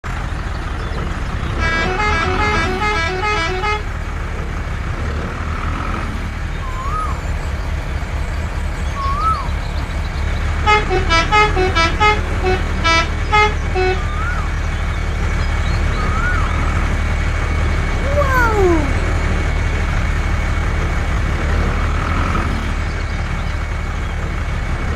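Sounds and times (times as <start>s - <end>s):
low engine rumble: 0.0s - 24.9s
musical vehicle horn: 1.6s - 4.0s, 10.6s - 14.5s
rising and falling whistles: 6.5s - 7.4s, 8.8s - 9.6s, 14.0s - 16.9s.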